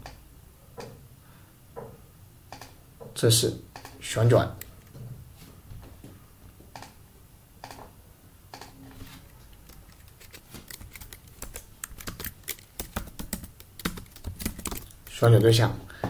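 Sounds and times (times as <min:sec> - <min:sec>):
typing on a keyboard: 0:09.7 - 0:15.3.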